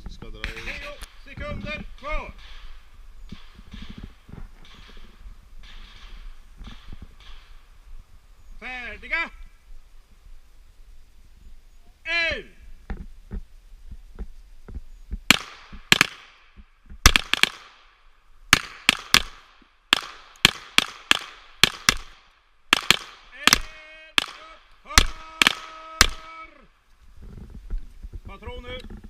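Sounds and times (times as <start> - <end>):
pistol shots: 15.3 - 26.3.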